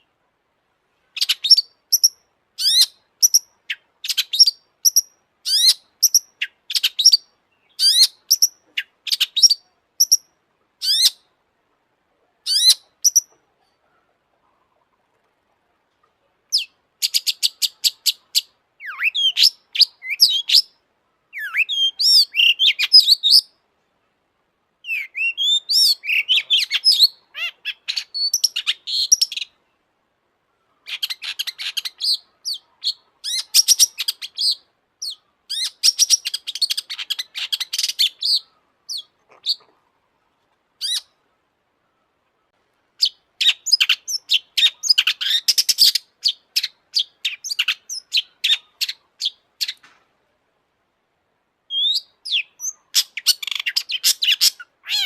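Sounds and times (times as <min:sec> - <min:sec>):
bird singing chattering notes: 0:12.5 - 0:13.3
bird whistles: 0:18.8 - 0:20.7, 0:21.4 - 0:23.5, 0:24.9 - 0:29.4, 0:51.7 - 0:55.0.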